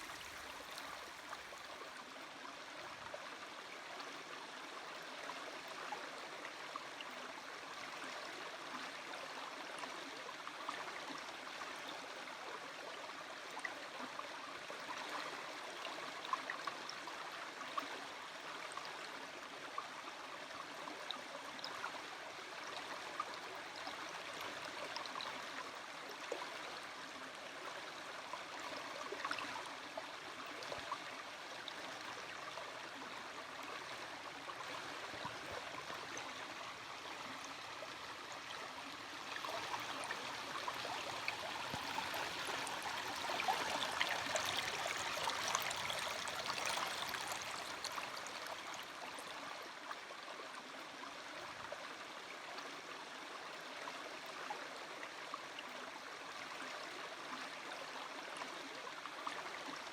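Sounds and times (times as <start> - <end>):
stream babbling: 0.0 - 10.8, 23.7 - 53.9.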